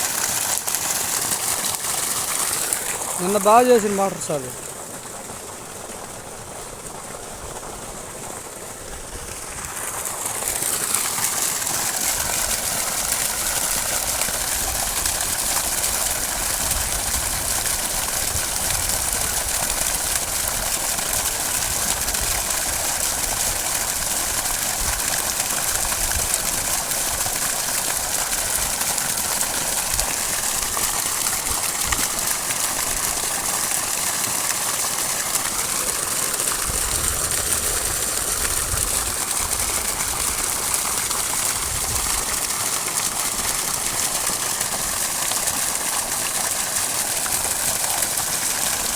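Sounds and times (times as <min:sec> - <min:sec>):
water pump motor running: 0:00.0 - 0:48.9
water rushing: 0:00.0 - 0:48.9.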